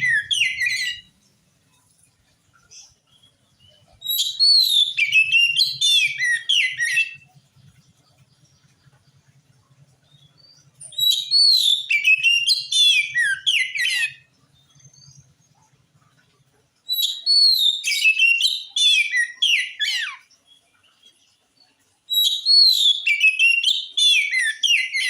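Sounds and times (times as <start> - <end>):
bird singing whistles: 0.0 - 1.1, 3.6 - 7.4, 10.1 - 15.2, 16.9 - 20.3, 22.1 - 25.0.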